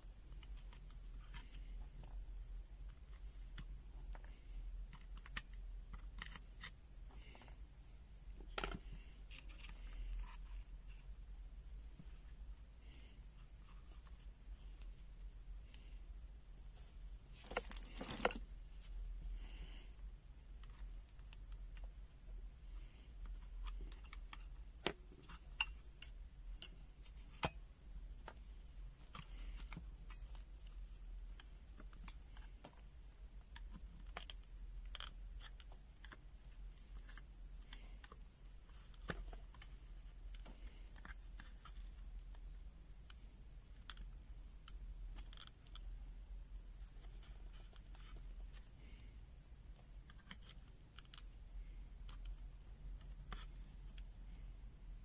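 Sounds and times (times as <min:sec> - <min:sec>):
clicks of plastic case handling: 0:17.4 - 0:18.5.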